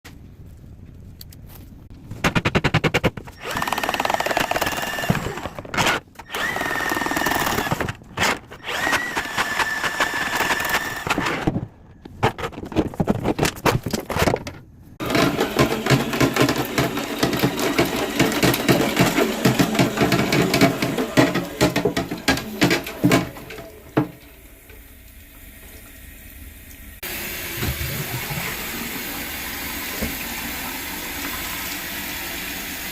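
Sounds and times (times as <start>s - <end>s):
power drill whining: 3.3s - 11.5s, 15.0s - 24.1s.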